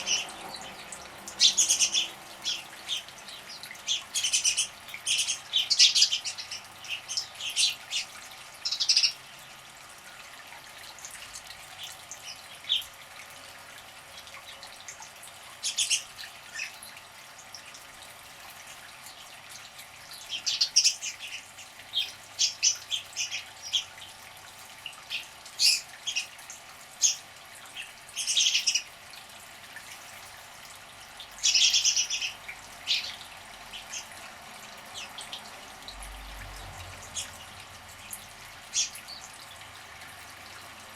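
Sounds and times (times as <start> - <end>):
small birds chirping: 0.0 - 9.6, 15.5 - 16.8, 20.0 - 24.2, 25.0 - 26.3, 27.0 - 28.9, 31.2 - 35.4, 37.0 - 39.3.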